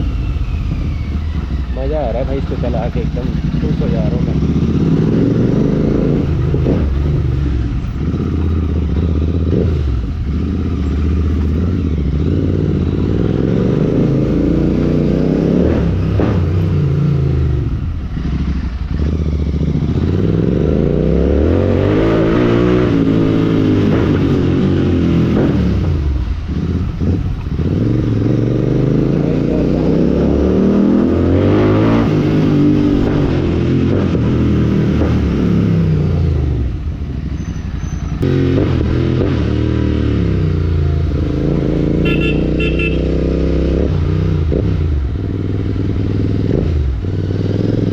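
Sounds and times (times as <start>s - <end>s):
motorcycle engine revving: 0.0s - 47.9s.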